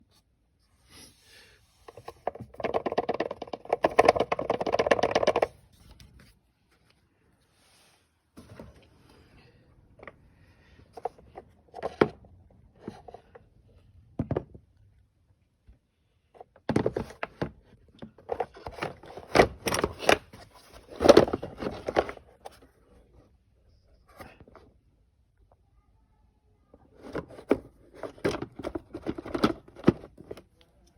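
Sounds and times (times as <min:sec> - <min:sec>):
plastic air box rattling: 0:01.9 - 0:05.6, 0:16.4 - 0:22.6, 0:27.0 - 0:30.5.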